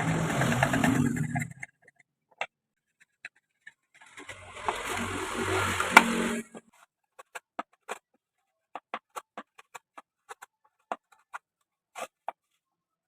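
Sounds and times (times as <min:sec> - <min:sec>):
wood lathe cutting wood: 0:00.0 - 0:01.6, 0:04.0 - 0:06.7.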